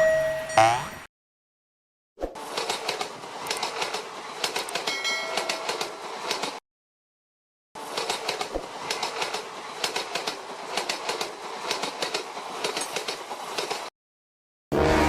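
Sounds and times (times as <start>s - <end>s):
train wheels clattering over rail joints: 2.4s - 6.6s, 7.8s - 13.9s.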